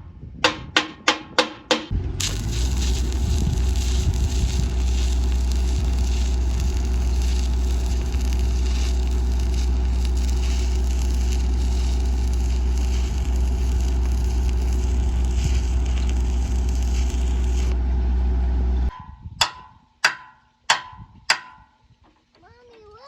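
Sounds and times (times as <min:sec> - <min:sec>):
low hum: 0:01.9 - 0:19.4
welding arc crackling: 0:02.2 - 0:17.8.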